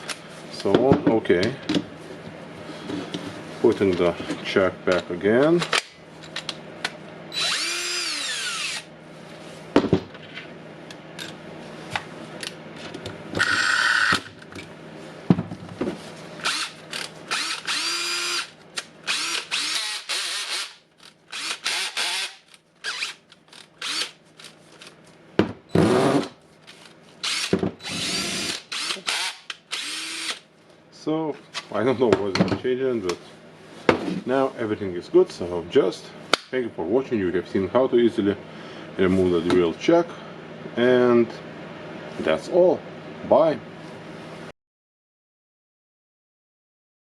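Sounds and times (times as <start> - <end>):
drill motor whining: 7.3 - 8.9, 13.4 - 14.2, 16.4 - 18.5, 19.1 - 23.2, 23.8 - 24.1, 27.2 - 30.4.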